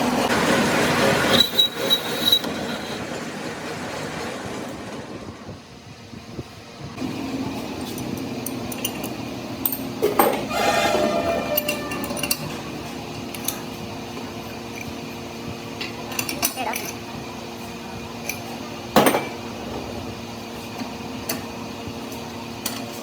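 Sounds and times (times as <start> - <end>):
thin high squeal: 1.3 - 2.9, 10.5 - 12.9.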